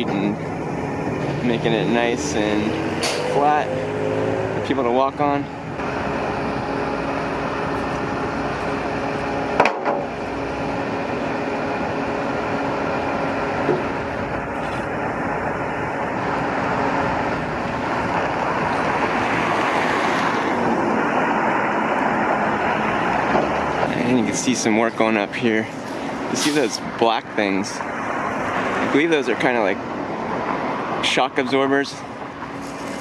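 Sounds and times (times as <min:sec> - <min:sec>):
road traffic noise: 0:00.0 - 0:33.0
sharp metallic knock: 0:03.0 - 0:03.4.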